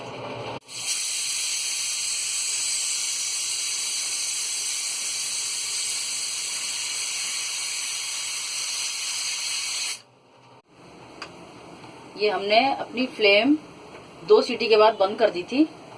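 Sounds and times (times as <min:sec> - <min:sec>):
pressure cooker whistling: 0:00.6 - 0:10.0.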